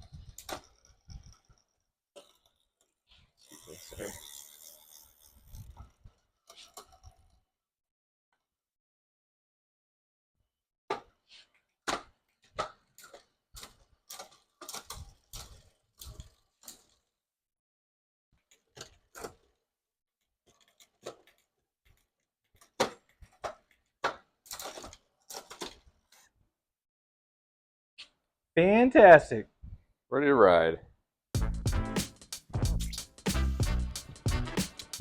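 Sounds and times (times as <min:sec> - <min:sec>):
bicycle parts clicking and knocking: 0:00.0 - 0:07.3, 0:11.3 - 0:17.0.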